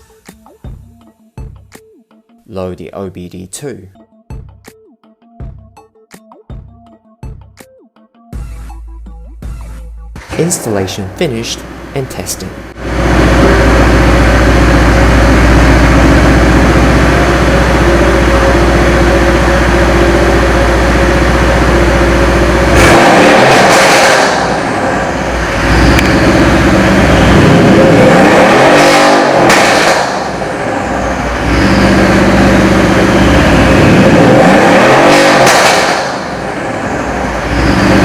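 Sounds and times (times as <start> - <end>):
car engine idling and revving: 8.9 - 38.0.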